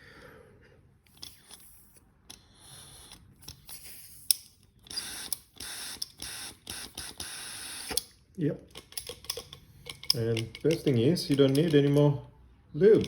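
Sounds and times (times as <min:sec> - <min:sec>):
sharp trigger clicks: 0:04.3 - 0:08.1.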